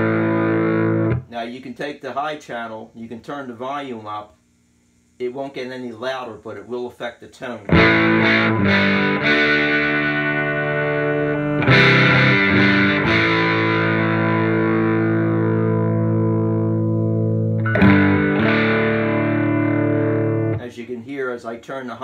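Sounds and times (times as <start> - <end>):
overdriven electric guitar chords: 0.0 - 1.3, 7.7 - 20.6.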